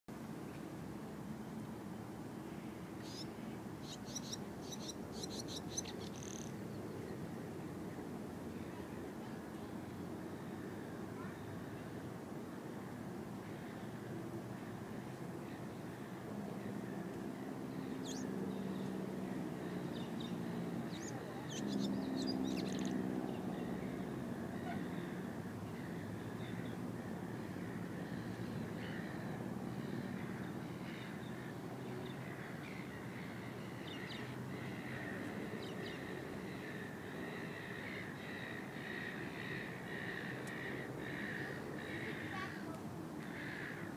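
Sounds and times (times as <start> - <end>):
bird chirping: 3.0 - 7.0, 17.8 - 18.8, 19.9 - 22.9.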